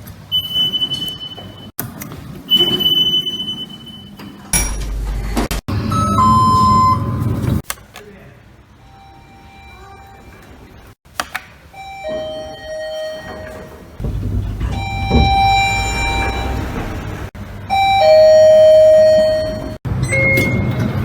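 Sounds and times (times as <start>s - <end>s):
elevator two-note chimes: 11.8s - 17.1s, 17.7s - 21.0s.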